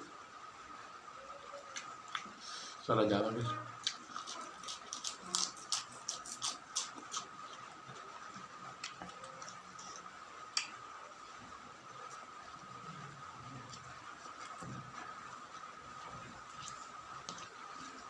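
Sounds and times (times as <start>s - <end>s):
chewing crunchy food: 3.8s - 10.8s.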